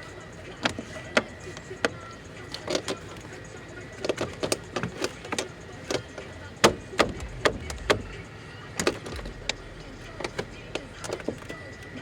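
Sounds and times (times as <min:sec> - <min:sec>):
sharp clicks and knocks: 0:06.6 - 0:08.2.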